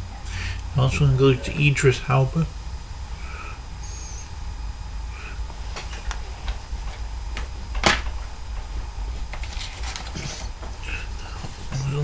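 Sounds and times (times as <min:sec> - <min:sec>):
plastic case snapping: 0:05.7 - 0:10.8.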